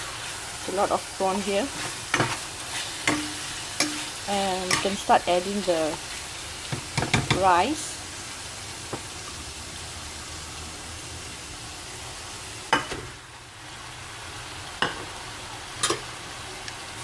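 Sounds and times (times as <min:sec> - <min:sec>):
food sizzling in a pan: 0:00.0 - 0:17.0
utensil knocking against pan: 0:06.7 - 0:07.4.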